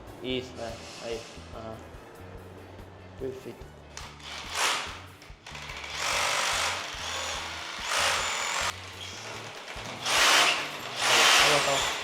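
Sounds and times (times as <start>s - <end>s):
rotary hammer drill boring: 4.0s - 12.0s.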